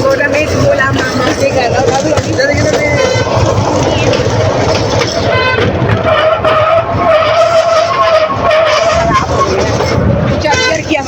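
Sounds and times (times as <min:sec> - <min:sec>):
train rumbling: 0:00.0 - 0:11.0
train brakes squealing: 0:05.1 - 0:11.0.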